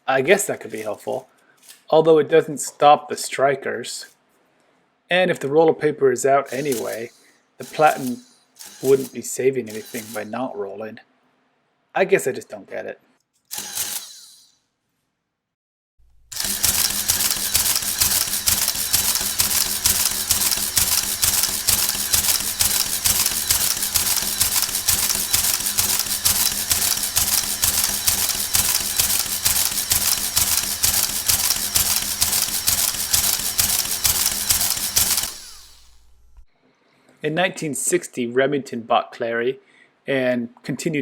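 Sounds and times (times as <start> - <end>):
adding machine clicks: 6.5 - 10.4, 13.5 - 14.5, 16.0 - 36.5
motor hum: 16.0 - 36.5.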